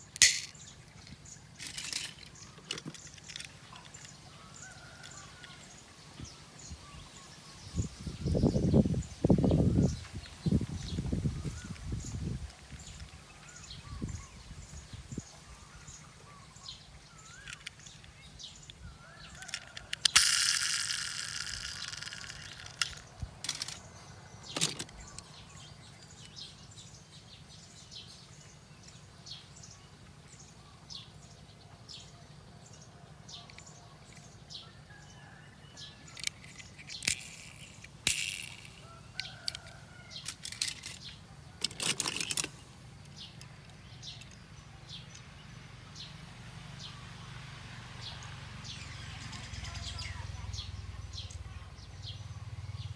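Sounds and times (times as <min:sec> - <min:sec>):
birds chirping: 0:00.0 - 0:46.2, 0:48.0 - 0:52.9
sharp clicks: 0:17.4 - 0:23.8.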